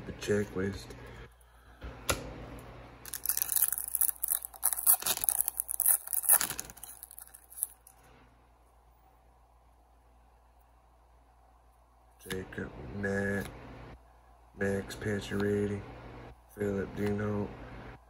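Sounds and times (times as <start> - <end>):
foil wrapper tearing and crinkling: 3.0 - 7.9.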